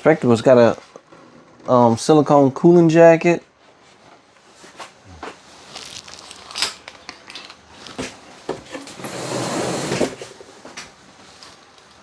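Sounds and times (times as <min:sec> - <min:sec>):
rustling scrape: 0:03.7 - 0:06.8, 0:07.7 - 0:11.6
plastic parts clicking and knocking: 0:06.0 - 0:08.6.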